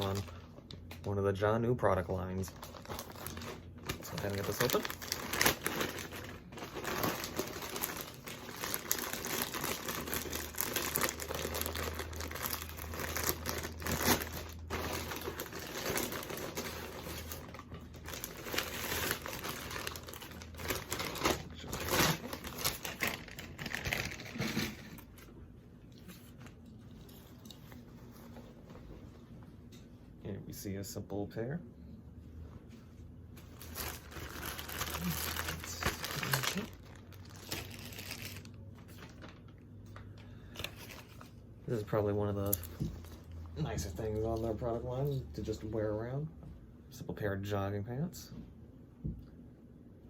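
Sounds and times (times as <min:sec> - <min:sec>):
packaging crinkling and tearing: 0:00.0 - 0:01.0, 0:02.1 - 0:25.3, 0:33.4 - 0:39.6, 0:40.4 - 0:43.4.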